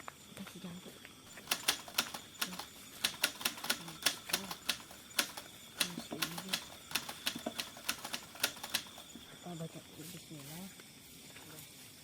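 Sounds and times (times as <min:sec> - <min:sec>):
sharp irregular clicks: 0:01.4 - 0:09.3.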